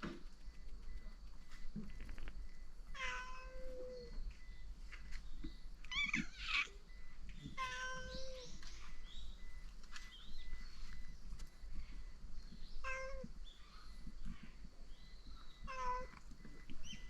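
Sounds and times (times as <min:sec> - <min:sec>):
cats meowing: 0:02.9 - 0:04.2, 0:05.8 - 0:08.6, 0:12.8 - 0:13.4, 0:15.6 - 0:16.2.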